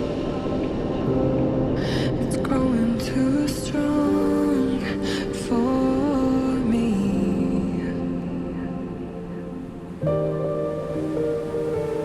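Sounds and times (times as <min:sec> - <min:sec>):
soft slow song: 0:00.0 - 0:12.0.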